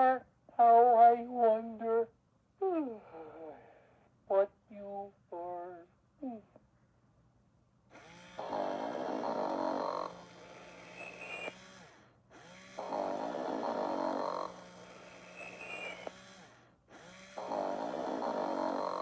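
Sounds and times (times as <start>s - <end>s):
toy recorded snoring: 8.0s - 19.0s.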